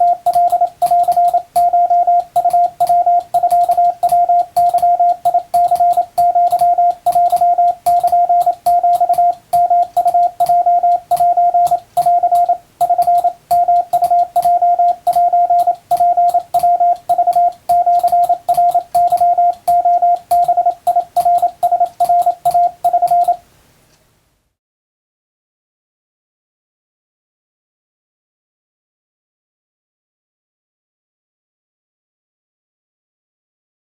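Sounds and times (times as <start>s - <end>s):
morse code beeps: 0.0s - 23.4s.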